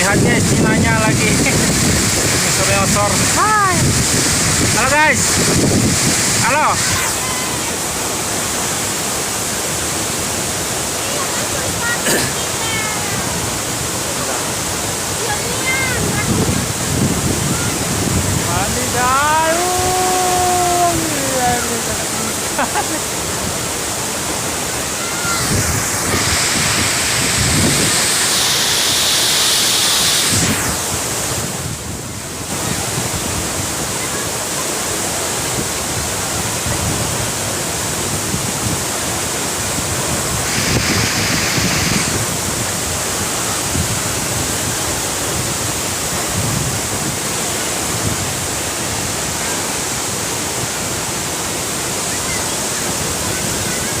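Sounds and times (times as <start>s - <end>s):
wind on microphone: 0.0s - 7.8s, 12.6s - 22.4s, 24.8s - 34.4s, 35.1s - 49.4s
heavy waterfall rushing: 0.0s - 54.0s.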